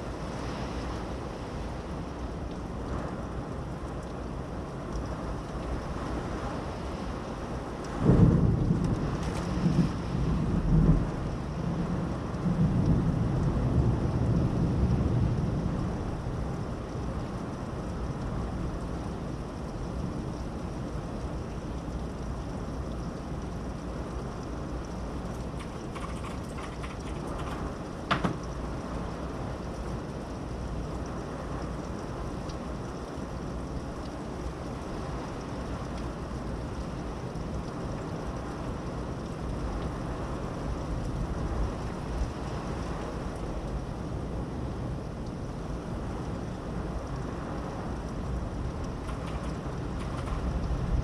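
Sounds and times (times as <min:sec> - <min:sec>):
steady rain: 0:00.0 - 0:51.0
wind: 0:00.0 - 0:51.0
raindrops tapping: 0:07.8 - 0:11.4, 0:21.2 - 0:29.1, 0:47.0 - 0:51.0
thunder clap and rumble: 0:07.8 - 0:18.8, 0:25.2 - 0:29.7, 0:48.2 - 0:51.0.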